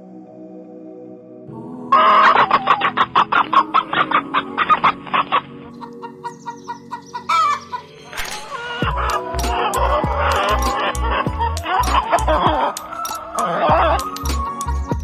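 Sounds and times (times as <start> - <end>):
chicken clucking: 2.0 - 14.0
background music with beat: 8.8 - 15.0.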